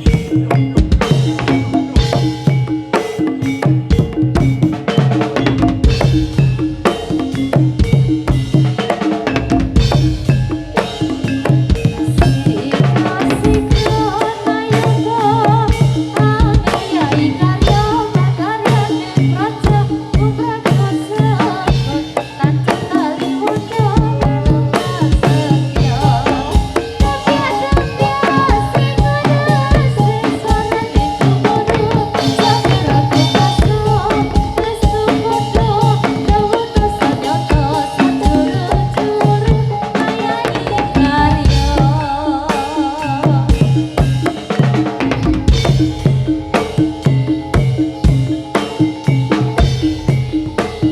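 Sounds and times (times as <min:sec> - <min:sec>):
hand drum fast strokes: 0:00.0 - 0:50.9
instruments holding low tones: 0:41.0 - 0:43.0.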